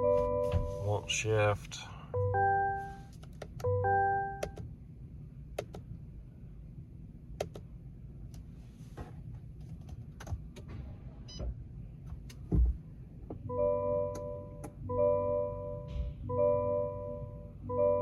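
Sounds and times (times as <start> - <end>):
dashboard warning chime: 0.0 - 1.5, 2.1 - 4.6, 13.4 - 18.0.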